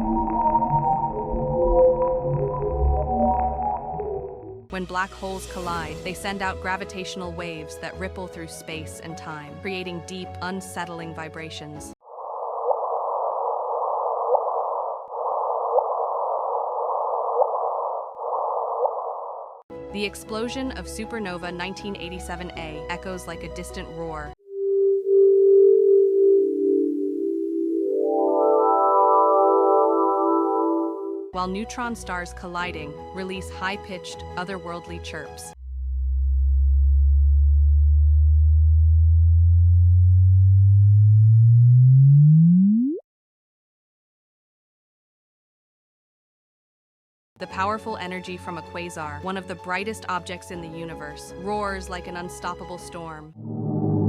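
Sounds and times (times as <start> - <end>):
rising chirp tone: 24.5 - 31.3, 38.7 - 43.0, 53.4 - 54.0.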